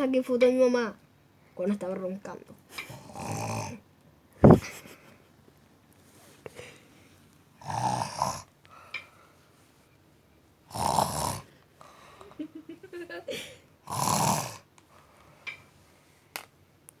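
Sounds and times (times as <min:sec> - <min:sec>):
woman snoring: 0:03.0 - 0:03.8, 0:07.6 - 0:08.5, 0:10.7 - 0:11.5, 0:13.9 - 0:14.7.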